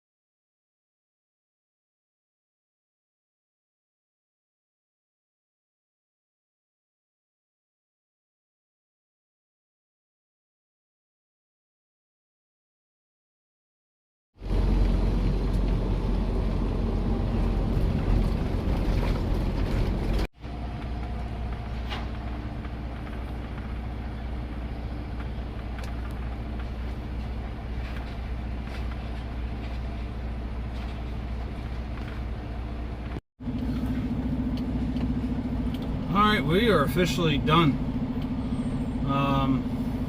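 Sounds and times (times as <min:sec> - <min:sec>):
truck diesel engine rumble: 0:14.4 - 0:40.0.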